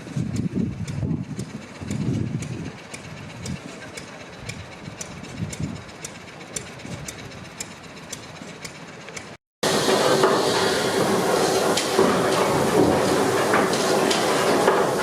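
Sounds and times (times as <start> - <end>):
steam engine ticking: 0.0 - 15.0
loud hiss of escaping steam: 9.6 - 15.0.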